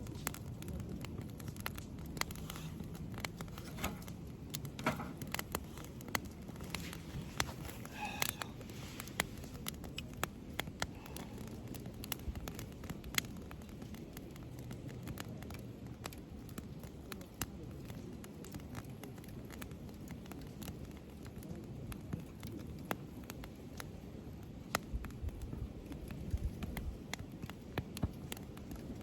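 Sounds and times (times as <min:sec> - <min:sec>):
steady low rumble: 0:00.0 - 0:15.9
campfire crackling and popping: 0:00.0 - 0:29.0.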